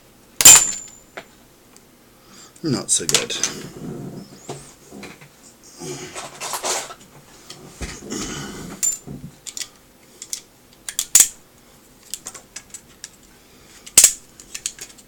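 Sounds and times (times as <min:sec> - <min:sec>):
plastic snapping: 0:13.9 - 0:15.0.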